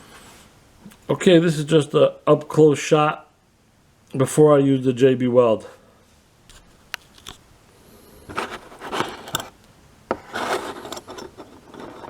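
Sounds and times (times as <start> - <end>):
small metal parts rubbing and scraping: 8.3 - 12.0.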